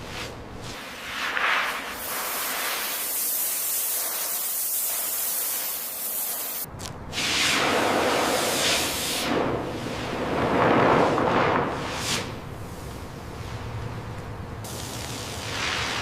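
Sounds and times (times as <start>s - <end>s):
pressure washer spraying: 1.7s - 6.7s.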